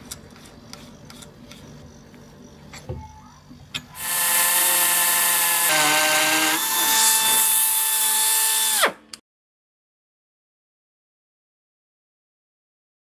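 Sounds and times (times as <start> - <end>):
pneumatic tool motor whine: 4.0 - 9.2.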